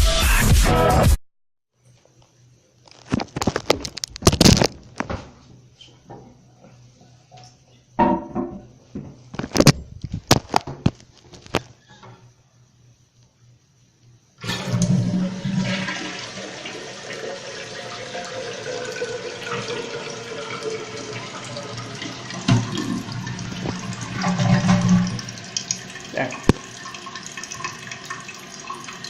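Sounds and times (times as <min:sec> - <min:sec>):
toilet flushing: 0:14.4 - 0:29.0.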